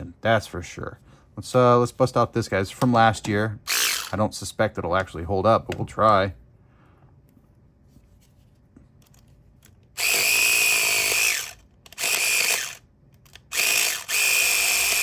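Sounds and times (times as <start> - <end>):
electric saw buzzing: 3.7 - 4.2, 10.0 - 12.8, 13.5 - 15.0.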